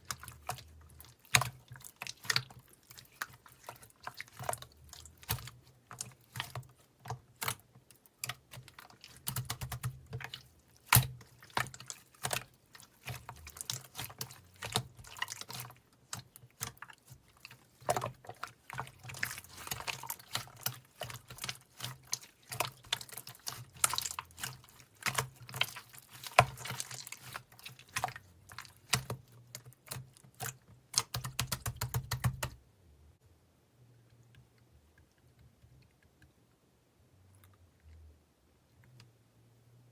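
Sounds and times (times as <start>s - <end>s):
irregular clicking and tapping: 28.8s - 32.6s.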